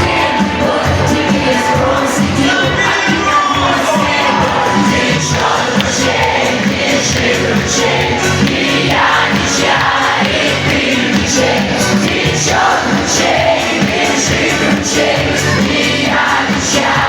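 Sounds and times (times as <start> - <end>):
woman singing: 0.0 - 6.3
live band playing folk-pop: 0.0 - 17.0.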